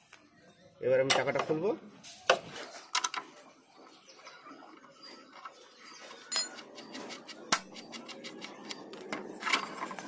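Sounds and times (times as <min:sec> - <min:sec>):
metal tools clinking and knocking: 0:05.2 - 0:10.0.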